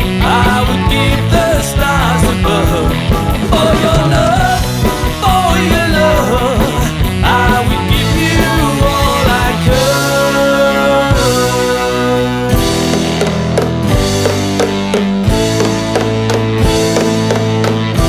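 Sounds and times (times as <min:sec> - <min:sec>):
lead vocal singing: 0:00.0 - 0:13.5
rock band playing: 0:00.0 - 0:18.0.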